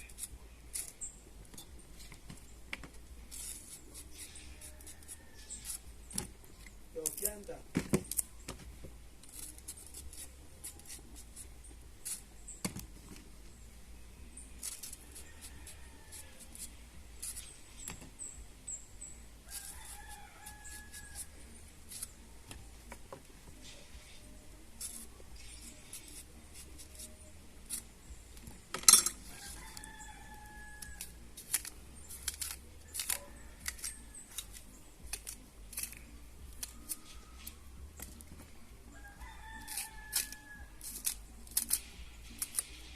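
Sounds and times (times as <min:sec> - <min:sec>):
knife clicking and scraping: 0:00.0 - 0:02.2, 0:03.3 - 0:07.5, 0:09.2 - 0:12.3, 0:14.6 - 0:17.9, 0:19.5 - 0:22.3, 0:23.6 - 0:38.4, 0:39.5 - 0:42.9.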